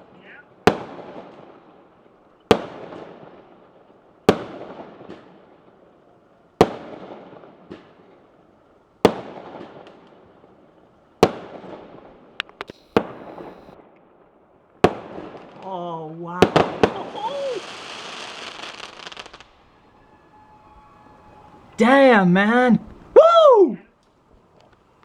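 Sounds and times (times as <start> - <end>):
small firework cracks: 0.6 - 6.0, 6.6 - 19.6
fireworks bangs with rolling echo: 0.6 - 15.8, 16.4 - 21.8.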